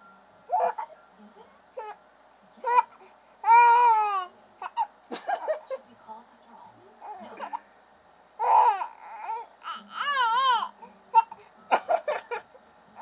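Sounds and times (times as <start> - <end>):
baby crying: 0.5 - 0.9, 2.6 - 4.9, 8.4 - 11.5.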